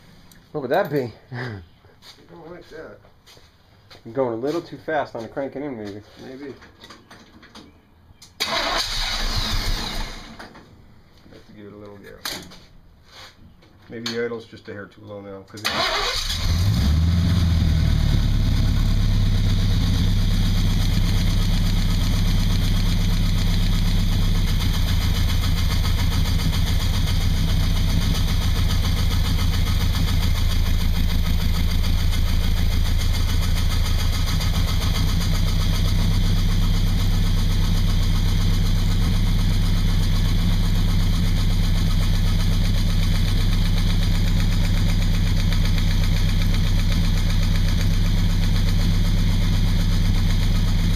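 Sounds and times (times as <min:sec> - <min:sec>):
engine idling: 0:15.7 - 0:50.9.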